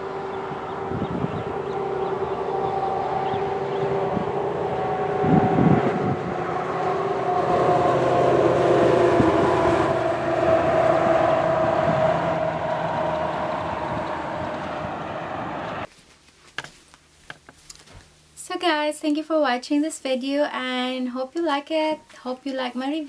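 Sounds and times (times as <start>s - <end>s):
loud machine drone: 0.0s - 15.9s.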